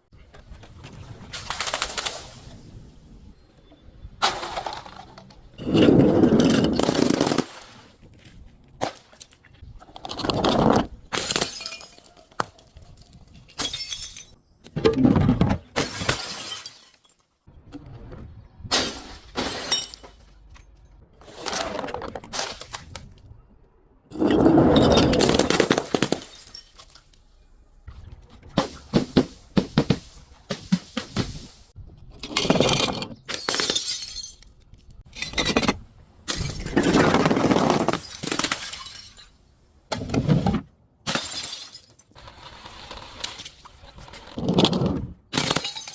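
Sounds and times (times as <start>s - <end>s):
glass bottles shattering: 11.1s - 14.4s, 15.8s - 17.3s, 18.8s - 20.3s, 24.1s - 27.2s, 32.3s - 35.7s, 36.3s - 39.4s, 41.1s - 42.2s, 45.3s - 45.9s.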